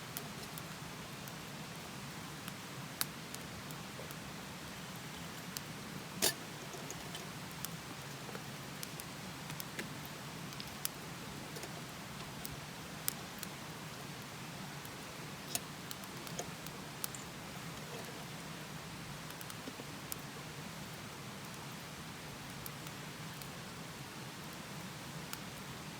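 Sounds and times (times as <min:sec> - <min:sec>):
campfire crackling and popping: 0:00.0 - 0:20.5
fire steady hiss: 0:00.0 - 0:25.9.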